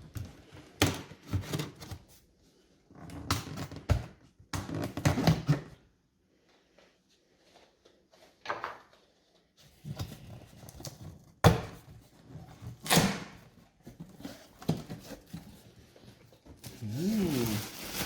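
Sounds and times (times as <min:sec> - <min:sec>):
box handling thumps and rustling: 0:09.9 - 0:16.8.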